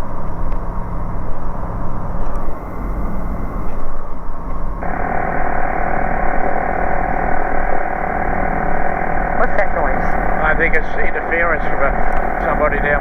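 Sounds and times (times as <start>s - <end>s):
aircraft engine drone: 0.0s - 13.0s
radio interference whine: 0.7s - 13.0s.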